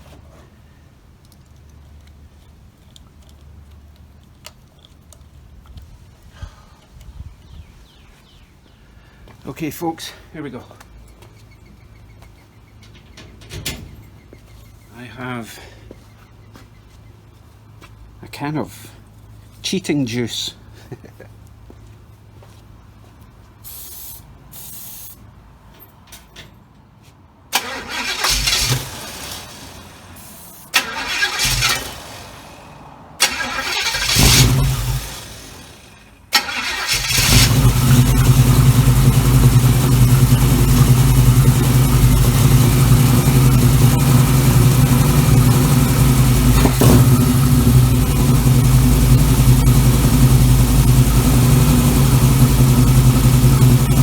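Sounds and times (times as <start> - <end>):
engine cranking: 27.6 - 29.9, 30.8 - 32.4, 33.2 - 54.0
car engine idling: 27.6 - 54.0.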